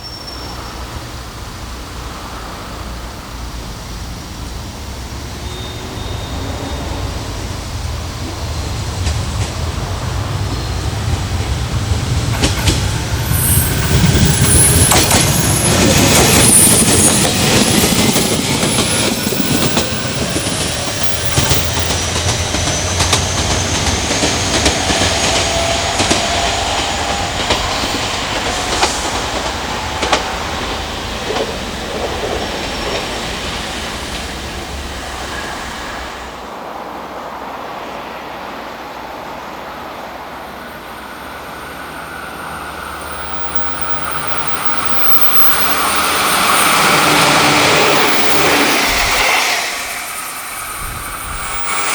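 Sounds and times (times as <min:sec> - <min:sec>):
train passing: 0:00.0 - 0:51.9
wheels clicking over rail joints: 0:09.0 - 0:34.4.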